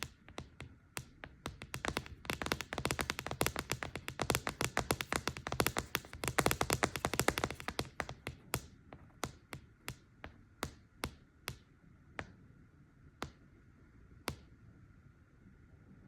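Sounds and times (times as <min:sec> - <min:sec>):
fingernails tapping on hard surface: 0:00.0 - 0:11.6.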